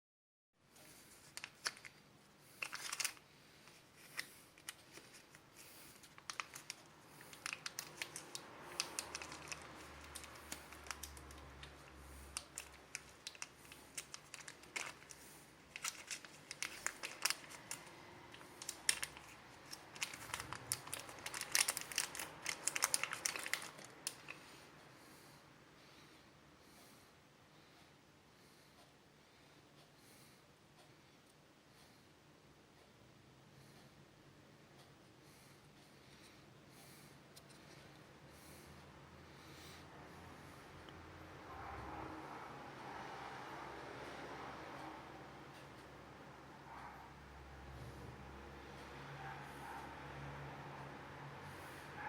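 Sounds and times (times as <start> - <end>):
plastic wrapping crinkling: 1.0 - 24.5.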